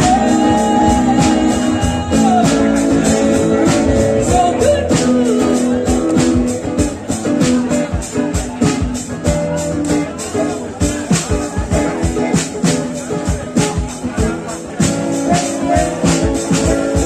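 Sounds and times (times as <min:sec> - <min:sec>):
person singing long sliding notes: 0:00.0 - 0:07.0
guitar chords: 0:00.0 - 0:17.0
steady percussion beat: 0:00.0 - 0:17.0.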